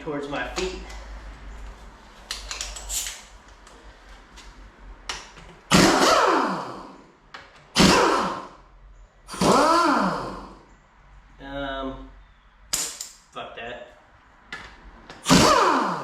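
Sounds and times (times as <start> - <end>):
pneumatic tool spinning down: 5.7 - 6.9, 7.8 - 8.5, 9.3 - 10.5, 15.2 - 16.0.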